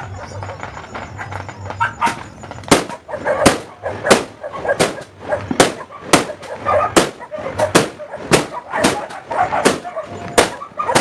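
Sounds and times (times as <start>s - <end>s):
fireworks bangs: 0.0s - 11.0s.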